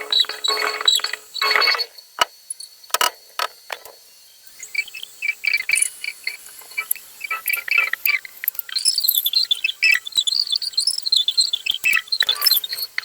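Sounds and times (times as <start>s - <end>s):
sharp clicks: 2.9s - 4.0s
songbird chirping and warbling: 4.3s - 13.0s.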